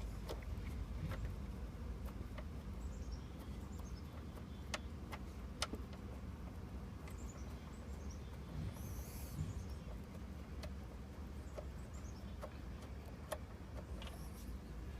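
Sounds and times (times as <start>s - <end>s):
bird calling: 7.1s - 10.2s, 11.4s - 14.9s
hand tools clicking and tapping: 9.8s - 14.4s.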